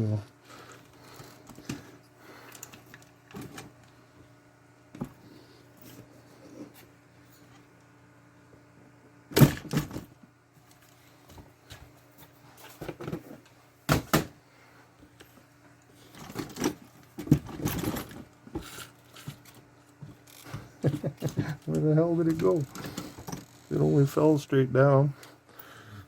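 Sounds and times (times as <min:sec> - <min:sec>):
rummaging through parts: 0:16.0 - 0:23.5.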